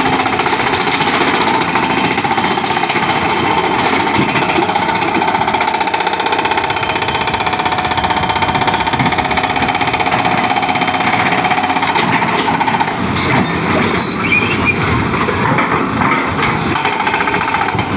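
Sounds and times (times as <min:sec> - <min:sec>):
excavator hammering rattle: 0:00.0 - 0:17.9
high metallic squeals: 0:07.0 - 0:10.6, 0:13.2 - 0:15.0.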